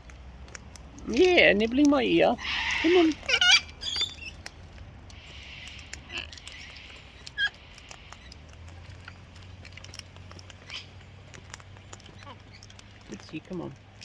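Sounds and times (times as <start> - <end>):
parrot beak and claws scratching: 0.0 - 14.0
parrot chirp: 2.4 - 4.5.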